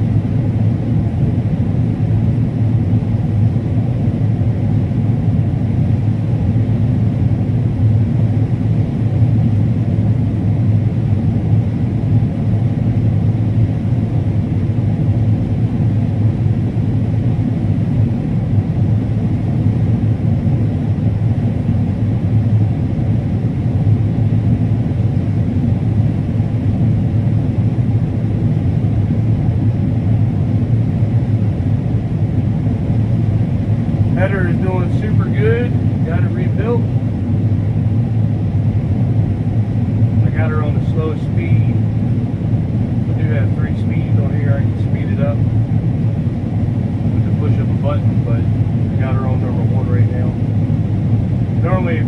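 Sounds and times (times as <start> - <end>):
combine harvester droning: 24.9 - 52.0.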